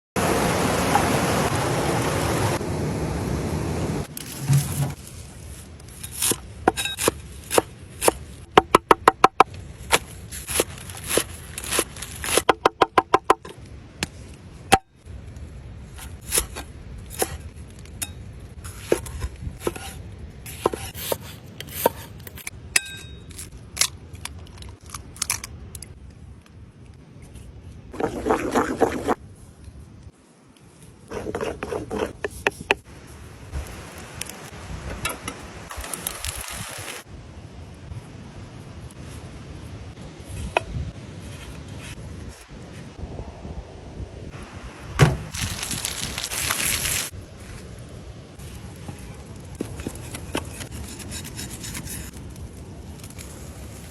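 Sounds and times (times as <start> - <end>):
rasping scrape: 4.1 - 5.2, 31.1 - 32.8, 49.6 - 52.2
hard objects knocking and scraping: 4.2 - 5.0.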